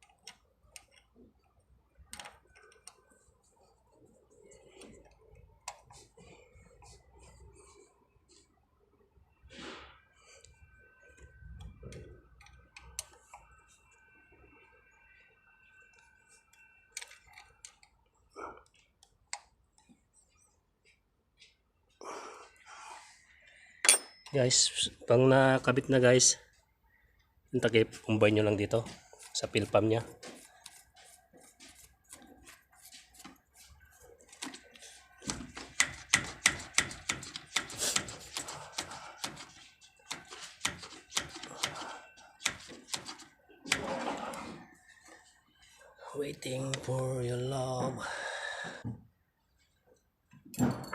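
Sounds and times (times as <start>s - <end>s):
hand tools clicking and clinking: 34.2s - 43.8s.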